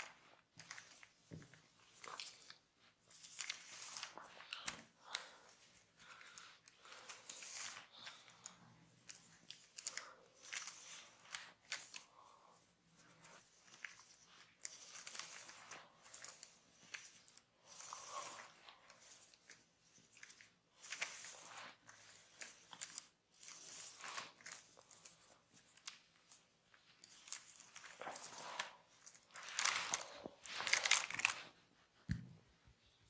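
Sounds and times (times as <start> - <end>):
hands scratching hair and skin: 13.0 - 31.6.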